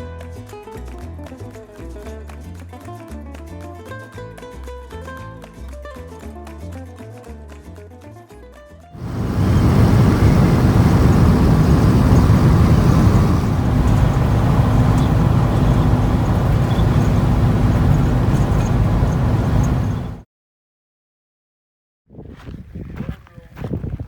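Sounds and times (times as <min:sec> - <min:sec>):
faint constant hum: 0:09.0 - 0:20.2
road noise rumble: 0:09.0 - 0:20.2.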